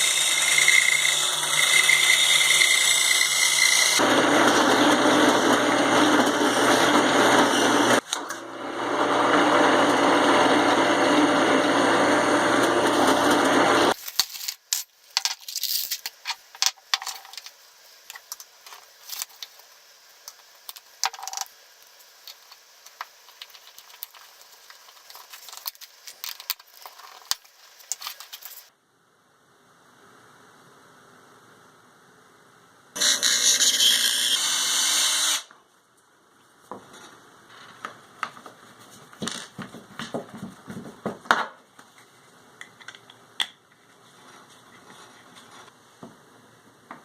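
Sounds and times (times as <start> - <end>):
power tool running: 0.0 - 14.0, 33.0 - 35.5.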